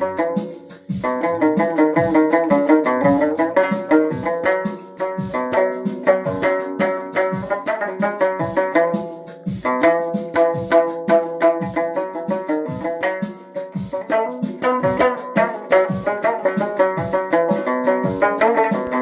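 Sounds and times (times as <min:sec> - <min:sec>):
melodic instruments: 0:00.0 - 0:09.1
steady drum beat: 0:00.0 - 0:19.0.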